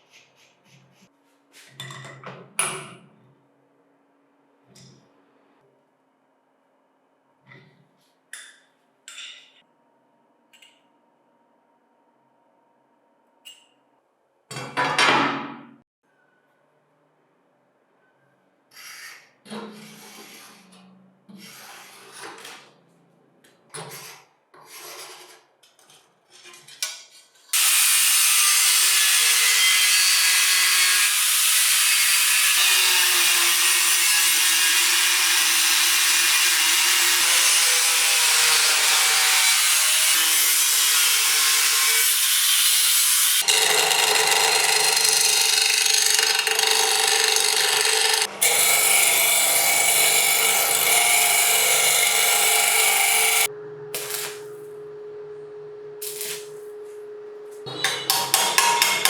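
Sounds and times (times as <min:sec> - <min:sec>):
abrasive power tool running: 0:43.2 - 0:54.1.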